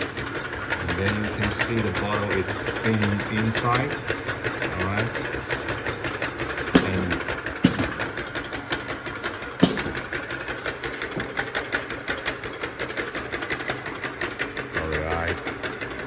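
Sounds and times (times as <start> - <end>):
labeling machine clicking rattle: 0.0 - 16.0.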